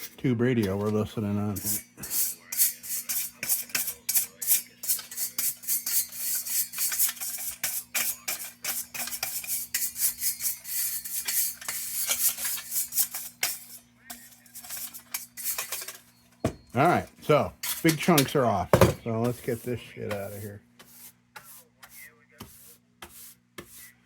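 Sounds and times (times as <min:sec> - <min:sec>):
scratchy scraping strokes: 0:01.5 - 0:16.0, 0:19.2 - 0:24.0.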